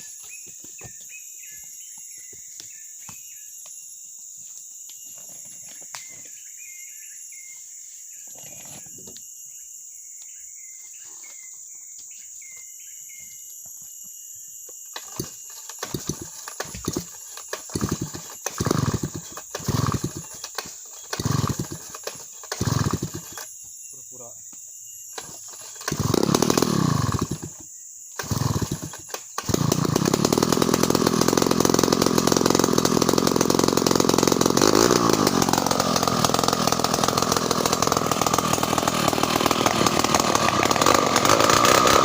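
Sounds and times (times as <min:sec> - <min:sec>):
insects buzzing: 0:00.0 - 0:42.0
chainsaw pull-start coughing: 0:15.0 - 0:23.4, 0:25.2 - 0:27.5, 0:28.2 - 0:42.0.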